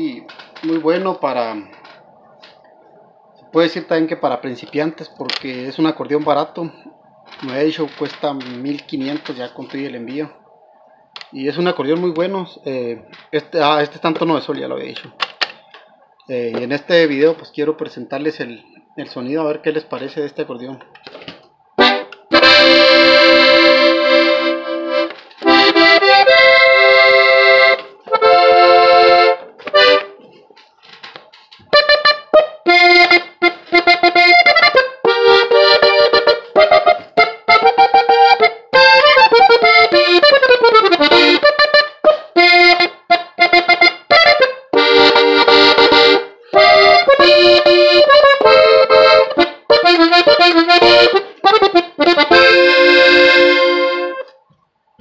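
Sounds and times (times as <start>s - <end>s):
button accordion playing: 21.8s - 30.2s, 31.7s - 54.3s.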